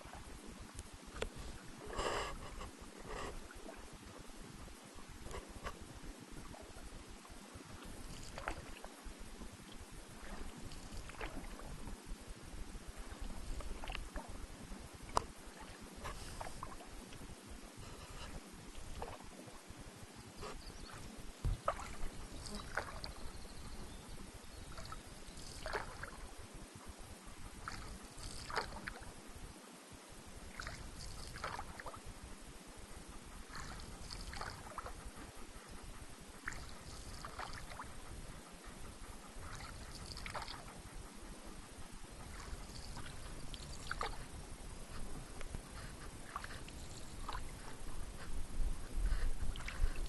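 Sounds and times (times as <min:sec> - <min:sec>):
paddle splashing in water: 0:07.8 - 0:09.0, 0:10.1 - 0:11.9, 0:13.0 - 0:14.4, 0:15.1 - 0:16.9, 0:18.7 - 0:19.5, 0:21.4 - 0:23.4, 0:24.7 - 0:26.3, 0:27.6 - 0:29.1, 0:30.5 - 0:32.0, 0:33.5 - 0:35.0, 0:36.4 - 0:38.0, 0:39.4 - 0:40.7, 0:42.2 - 0:44.3, 0:45.0 - 0:48.3, 0:49.4 - 0:50.0.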